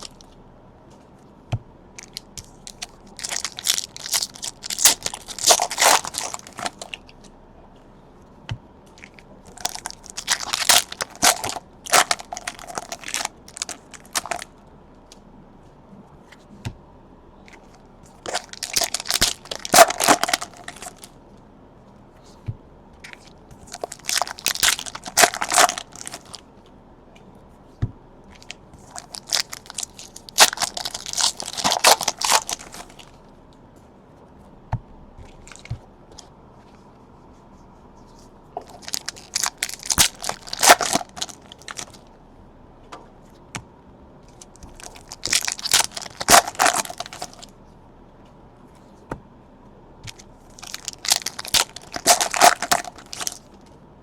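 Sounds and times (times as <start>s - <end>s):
wrappers tearing and crinkling: 0.0s - 0.2s, 2.0s - 7.0s, 9.0s - 14.5s, 18.1s - 21.1s, 23.2s - 26.4s, 28.4s - 33.2s, 38.6s - 42.0s, 44.3s - 47.5s, 50.5s - 53.6s.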